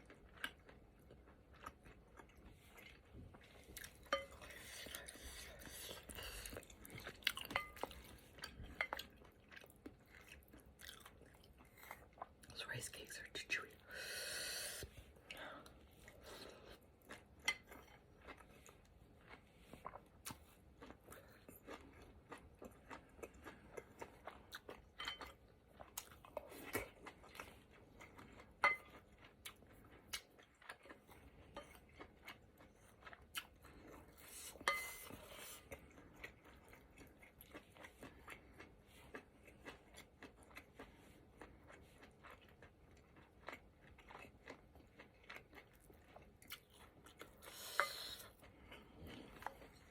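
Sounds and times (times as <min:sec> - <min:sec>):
close-up chewing: 0:00.0 - 0:49.9
spoon clinking against bowl: 0:34.6 - 0:35.1.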